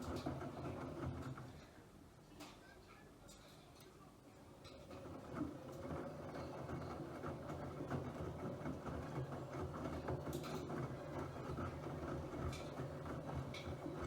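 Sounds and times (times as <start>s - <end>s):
washing machine rumbling: 5.8s - 14.0s.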